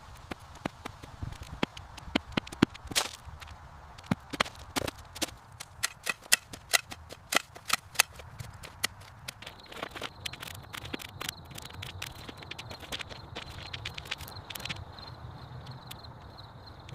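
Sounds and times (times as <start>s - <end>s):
sharp clicks and knocks: 0.2s - 14.8s.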